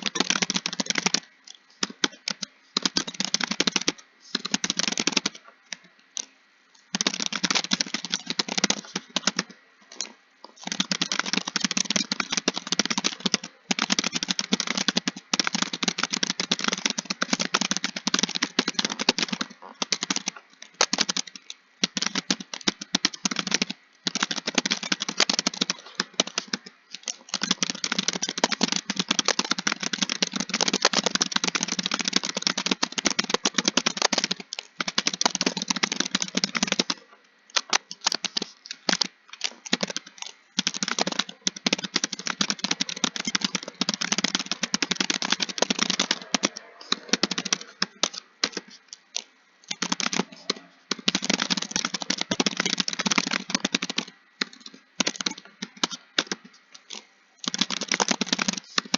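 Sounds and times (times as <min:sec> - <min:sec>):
keyboard typing: 0:00.0 - 0:58.9.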